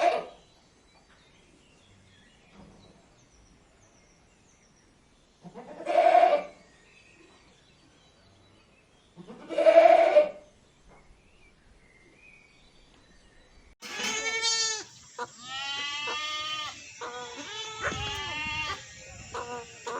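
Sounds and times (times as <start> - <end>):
goat bleating: 13.8 - 19.9.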